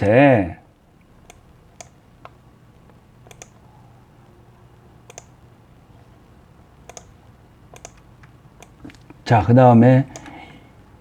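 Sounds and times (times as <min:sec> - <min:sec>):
low steady hum: 0:00.0 - 0:11.0
light clicks: 0:01.2 - 0:03.6, 0:05.1 - 0:05.3, 0:06.9 - 0:07.1, 0:07.7 - 0:09.2.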